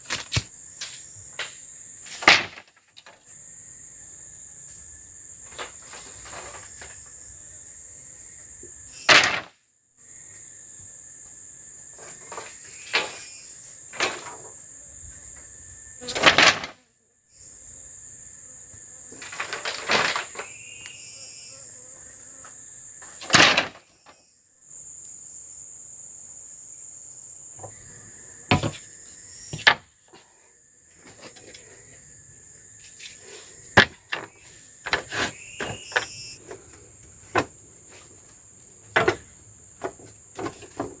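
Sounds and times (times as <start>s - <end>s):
high-pitched insect chorus: 0.0s - 41.0s.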